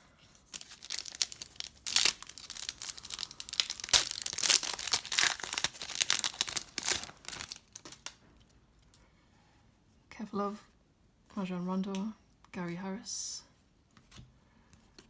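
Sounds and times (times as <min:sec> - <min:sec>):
card pack wrapper crinkling: 0:00.4 - 0:08.2
wrapper tearing: 0:00.4 - 0:08.2.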